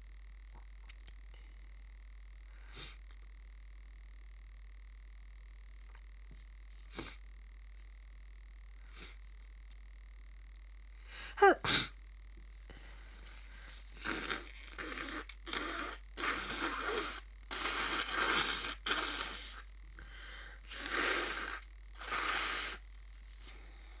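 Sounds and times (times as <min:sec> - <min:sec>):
person sniffing through congested nose: 0:02.6 - 0:03.0, 0:06.8 - 0:07.2, 0:08.8 - 0:09.2, 0:11.4 - 0:12.0, 0:13.5 - 0:23.8.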